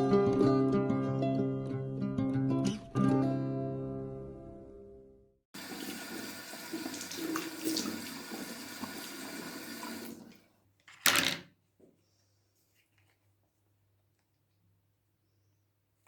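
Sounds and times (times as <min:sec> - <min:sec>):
tap water running into sink: 0:05.6 - 0:10.4.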